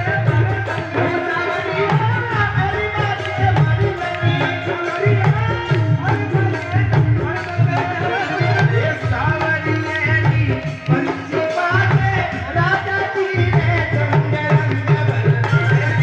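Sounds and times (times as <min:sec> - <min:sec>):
steady drum beat: 0:00.0 - 0:16.0.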